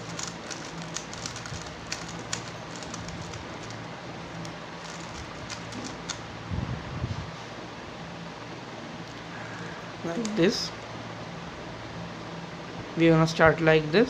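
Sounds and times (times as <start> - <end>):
plastic cube clicking: 0.0 - 6.2.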